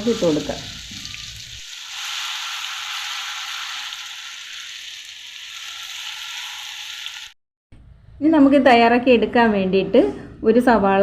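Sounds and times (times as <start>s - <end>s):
food deep-frying in oil: 0.0s - 7.4s.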